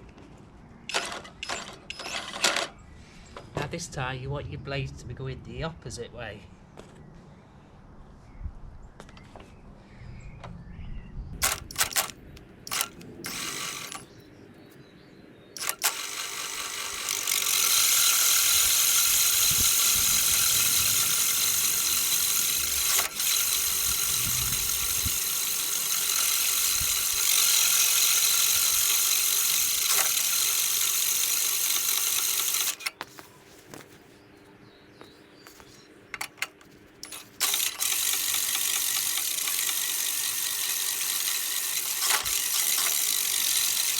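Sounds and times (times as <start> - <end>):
mower reel whirring with ratcheting clicks: 0.9 - 2.7, 11.4 - 14.1, 15.6 - 33.2, 36.1 - 43.9.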